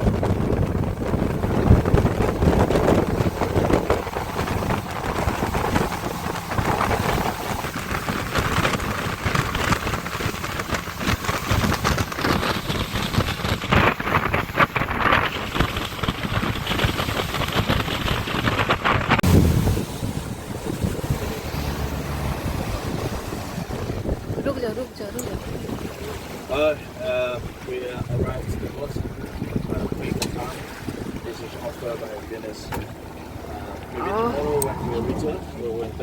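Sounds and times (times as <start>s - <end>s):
boat rushing across water: 0.0s - 36.0s
wind buffeting microphone: 0.0s - 36.0s.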